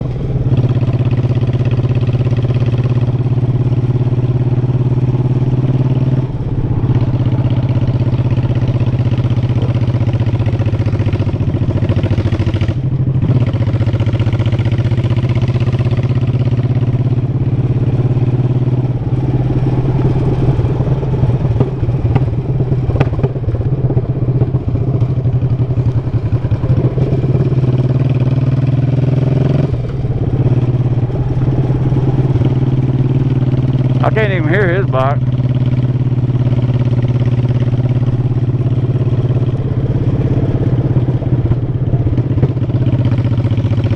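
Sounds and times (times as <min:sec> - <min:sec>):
motorcycle engine running: 0:00.0 - 0:43.9.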